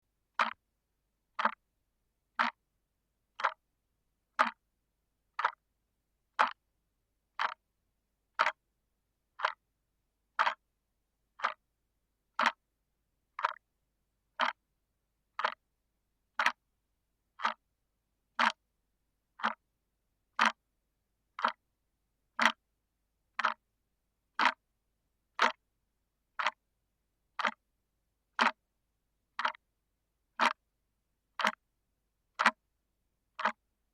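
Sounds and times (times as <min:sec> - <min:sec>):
clock ticking: 0:00.4 - 0:00.6, 0:01.4 - 0:01.6, 0:02.4 - 0:02.6, 0:03.4 - 0:03.6, 0:04.4 - 0:04.6, 0:05.4 - 0:05.6, 0:06.4 - 0:06.6, 0:07.4 - 0:07.6, 0:08.4 - 0:08.6, 0:09.4 - 0:09.6, 0:10.4 - 0:10.6, 0:11.4 - 0:11.6, 0:12.4 - 0:12.6, 0:13.4 - 0:13.6, 0:14.4 - 0:14.6, 0:15.4 - 0:15.6, 0:16.4 - 0:16.6, 0:17.4 - 0:17.6, 0:18.4 - 0:18.6, 0:19.4 - 0:19.6, 0:20.4 - 0:20.6, 0:21.4 - 0:21.6, 0:22.4 - 0:22.6, 0:23.4 - 0:23.6, 0:24.4 - 0:24.6, 0:25.4 - 0:25.6, 0:26.4 - 0:26.6, 0:27.4 - 0:27.6, 0:28.4 - 0:28.6, 0:29.4 - 0:29.6, 0:30.4 - 0:30.6, 0:31.4 - 0:31.6, 0:32.4 - 0:32.6, 0:33.4 - 0:33.6.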